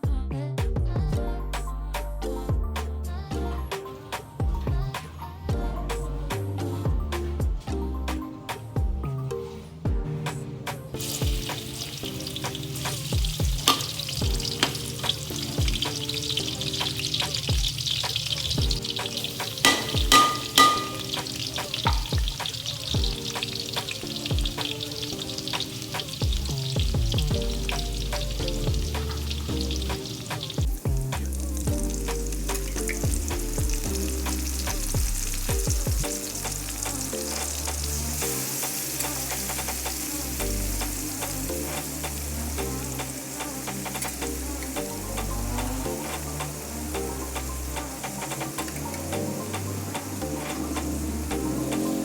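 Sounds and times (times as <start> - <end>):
soft background music: 0.0 - 52.0
spatula scraping a pan: 11.0 - 22.6
food sizzling in a hot pan: 11.0 - 52.0.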